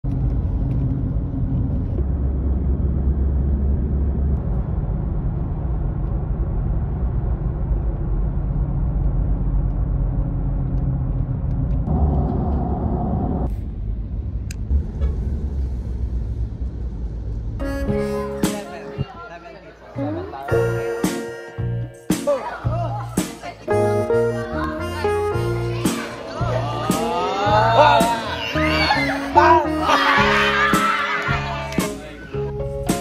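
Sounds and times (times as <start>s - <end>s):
steady low rumble: 0.0s - 18.1s.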